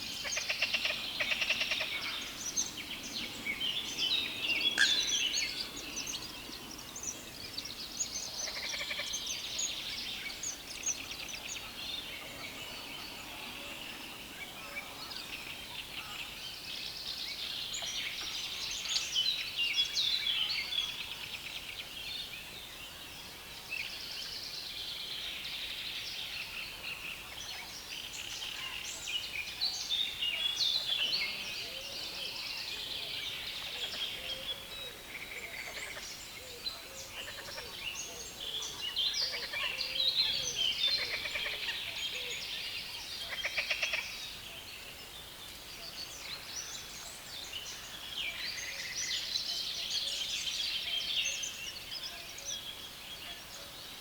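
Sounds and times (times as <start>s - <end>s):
small birds chirping and trilling: 24.2s - 54.0s.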